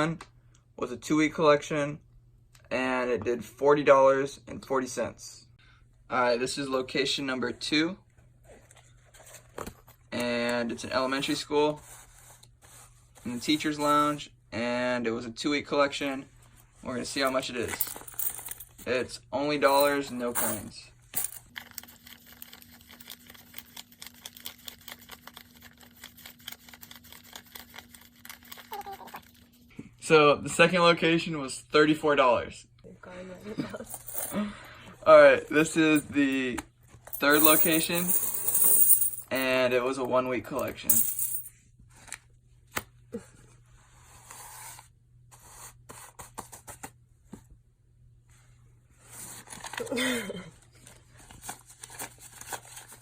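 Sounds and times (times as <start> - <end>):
paper bills flicking and rustling: 21.2 - 29.3.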